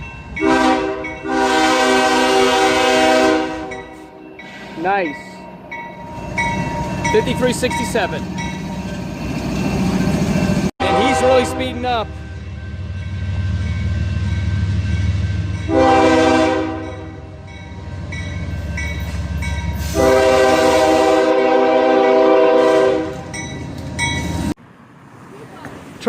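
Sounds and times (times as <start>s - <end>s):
locomotive air horn: 0.4s - 4.0s, 10.8s - 12.2s, 15.7s - 17.4s, 19.8s - 23.3s.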